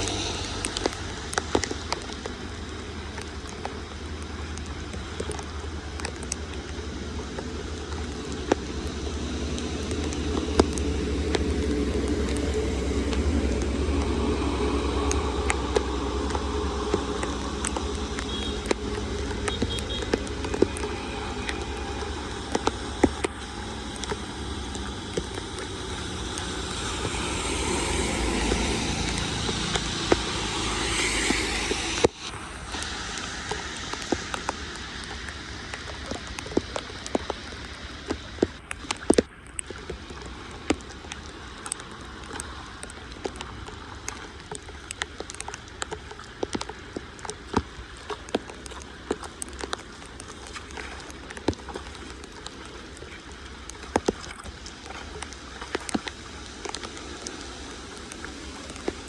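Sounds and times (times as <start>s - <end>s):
loud rushing noise: 0.0s - 1.1s, 25.6s - 35.0s
rain hissing on street: 0.0s - 59.0s
sharp water drips: 0.0s - 59.0s.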